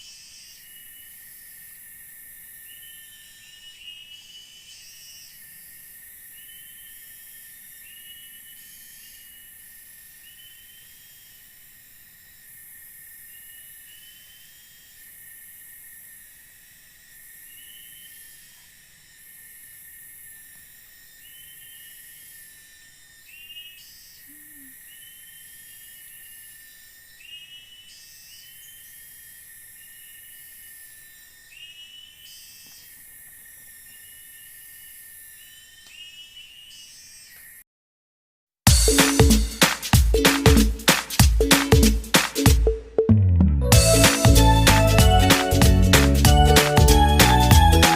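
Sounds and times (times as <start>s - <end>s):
insects chirping: 0.0s - 37.6s
insects droning: 0.0s - 37.6s.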